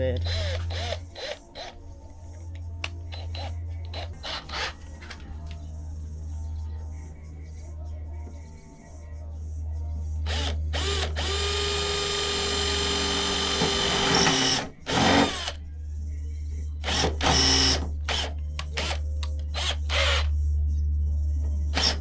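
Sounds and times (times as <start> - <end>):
power drill boring through sheet metal: 0.2 - 1.8, 10.3 - 15.5, 16.9 - 19.0.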